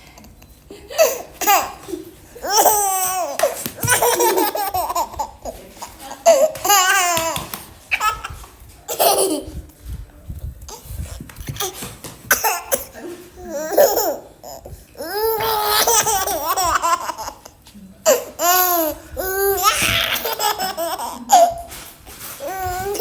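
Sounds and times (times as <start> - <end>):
baby laughing: 0.9 - 5.5, 6.2 - 9.5, 13.5 - 17.5, 18.1 - 21.7.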